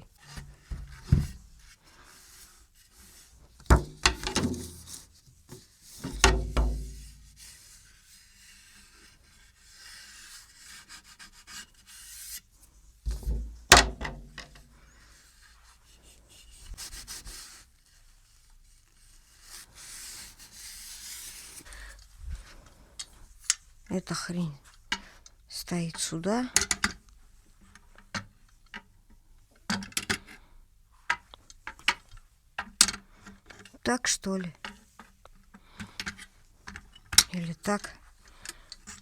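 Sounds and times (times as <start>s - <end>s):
rubbing and scraping: 0.0s - 22.6s
knocks on drum hardware: 13.1s - 14.4s.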